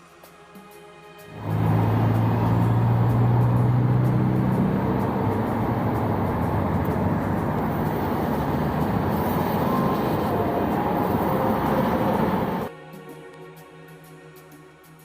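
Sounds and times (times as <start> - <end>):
motor vehicle running: 1.3 - 12.7.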